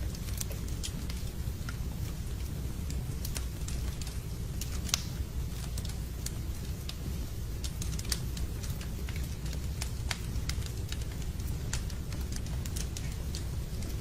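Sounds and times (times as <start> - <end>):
low rumble of burning logs: 0.0 - 14.0
sharp pops and snaps: 0.0 - 14.0
wood fire crackling: 0.0 - 14.0.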